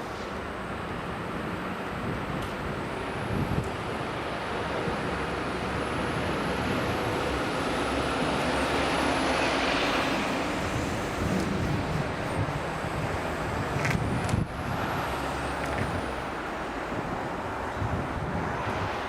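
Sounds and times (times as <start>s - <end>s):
train rolling along track: 0.0s - 19.0s.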